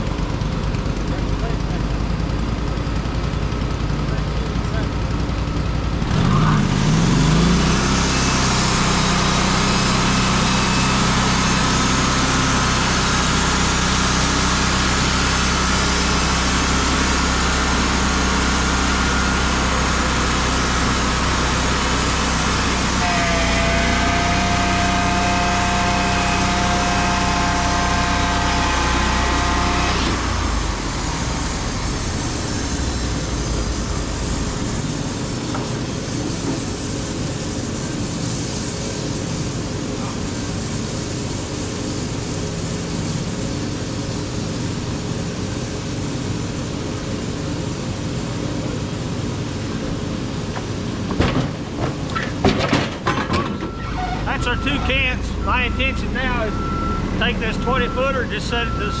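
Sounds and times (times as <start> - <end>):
sawmill engine running: 0.0 - 59.0
high whine: 14.7 - 38.0, 53.6 - 59.0.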